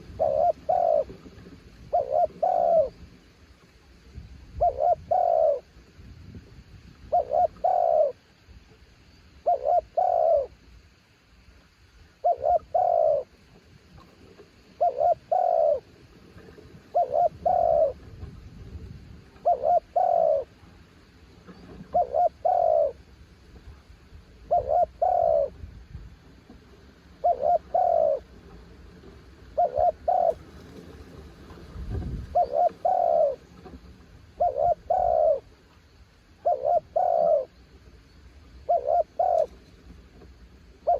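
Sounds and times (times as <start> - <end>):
dove cooing: 0.0 - 3.0, 4.5 - 5.7, 7.0 - 8.2, 9.4 - 10.6, 12.2 - 13.4, 14.7 - 18.3, 19.3 - 20.6, 21.5 - 23.0, 24.4 - 25.6, 27.1 - 28.7, 29.4 - 35.6, 36.4 - 37.6, 38.6 - 39.7.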